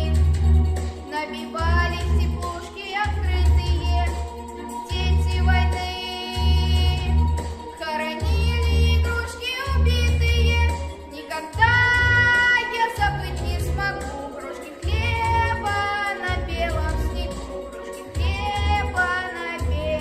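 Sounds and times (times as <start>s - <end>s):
backing track with bass line: 0.0s - 1.0s, 1.6s - 14.2s, 14.8s - 20.0s
boy singing with vibrato: 1.0s - 20.0s.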